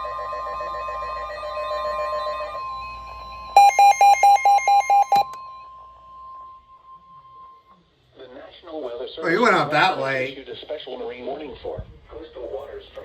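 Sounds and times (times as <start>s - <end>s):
rapid electronic alarm beeps: 1.6s - 5.3s.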